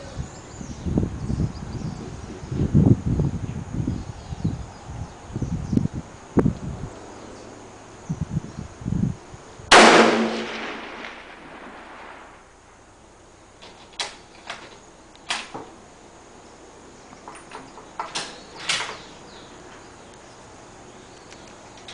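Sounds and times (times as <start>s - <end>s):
rifle shot: 9.7s - 12.5s.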